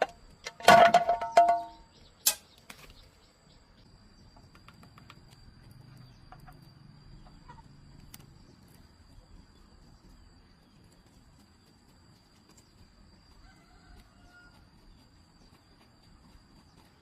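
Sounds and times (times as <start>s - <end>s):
chickens clucking: 6.0s - 8.3s.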